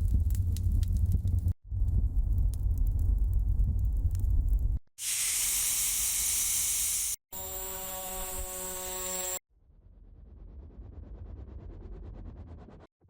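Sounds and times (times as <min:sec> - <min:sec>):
low rumbling with crackles: 0:00.0 - 0:04.8
bright steady hiss: 0:05.0 - 0:07.2.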